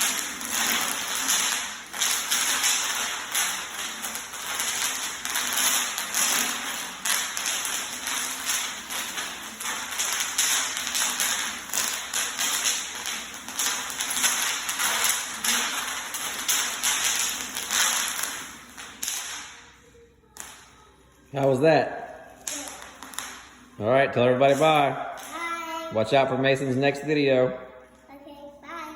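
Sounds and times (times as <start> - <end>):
bubble wrap popping: 0.0 - 20.6, 22.2 - 23.6.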